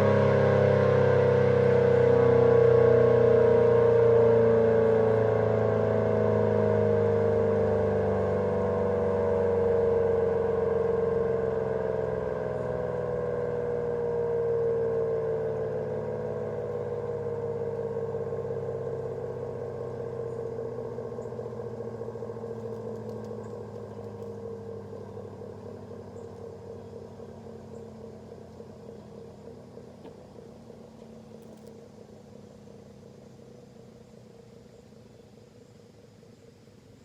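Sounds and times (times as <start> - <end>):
siren winding down: 0.0 - 26.7.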